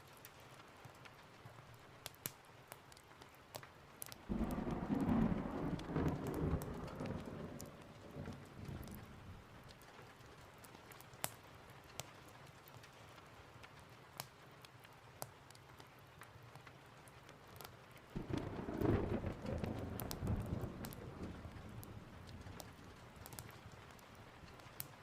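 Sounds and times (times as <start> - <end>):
steady rain hiss: 0.0 - 25.0
wood fire crackling pops: 2.0 - 13.0, 17.6 - 25.0
thunder rumble: 4.3 - 9.6, 18.2 - 24.1.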